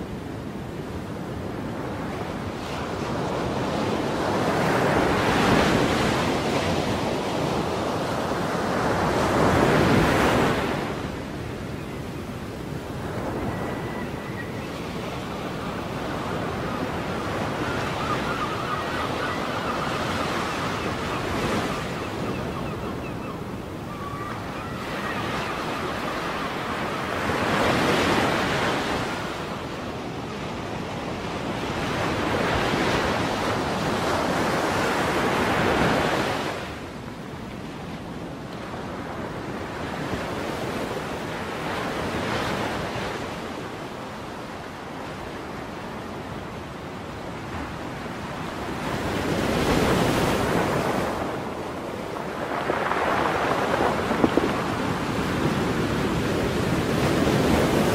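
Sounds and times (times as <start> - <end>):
wind: 0.0 - 57.9
waves breaking: 49.6 - 57.9.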